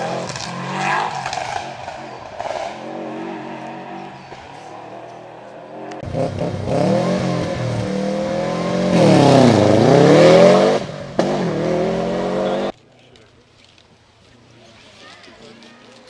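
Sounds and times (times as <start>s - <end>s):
rally car engine revving: 0.0s - 12.7s.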